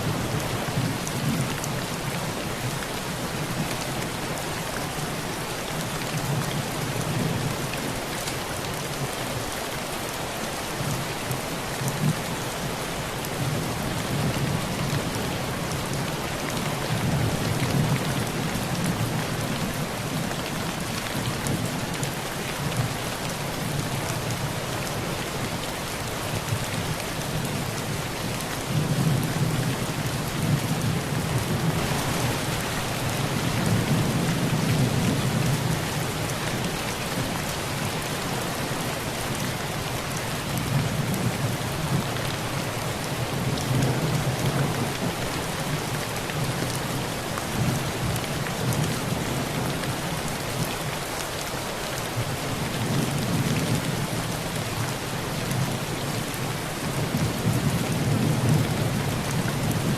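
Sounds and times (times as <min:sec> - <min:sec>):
heavy rain on a tin roof: 0:00.0 - 0:59.9.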